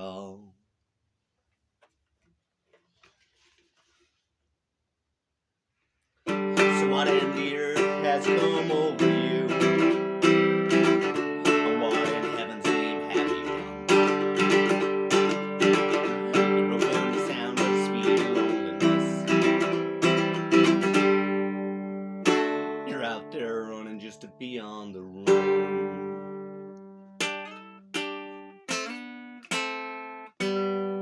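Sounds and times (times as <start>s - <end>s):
ukulele strumming: 6.2s - 31.0s.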